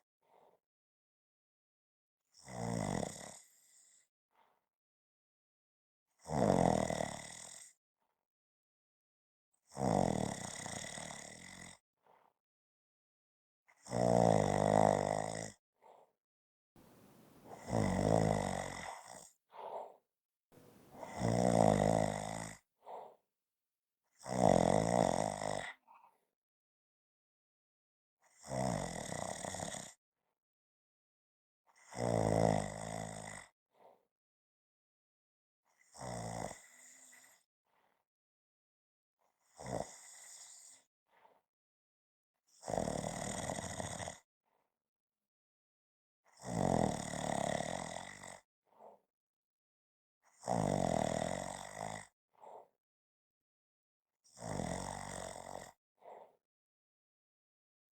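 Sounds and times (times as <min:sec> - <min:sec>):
person snoring: 0:14.0 - 0:15.5, 0:16.8 - 0:19.3, 0:20.6 - 0:22.6, 0:24.3 - 0:25.6, 0:50.4 - 0:52.0
soft breathing: 0:16.8 - 0:18.1, 0:20.6 - 0:21.4.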